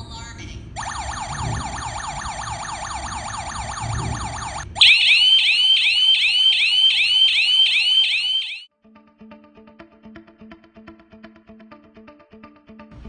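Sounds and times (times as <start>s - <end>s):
burglar alarm siren whooping: 0.8s - 8.7s
high-pitched sweeping siren tone: 0.8s - 8.7s.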